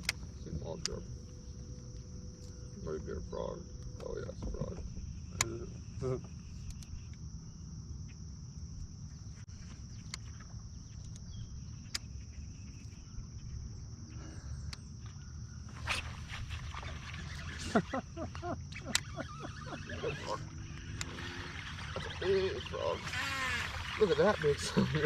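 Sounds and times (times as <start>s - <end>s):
sharp clicks: 0.0s - 1.0s, 18.7s - 24.0s
high-pitched insect chorus: 0.0s - 25.0s.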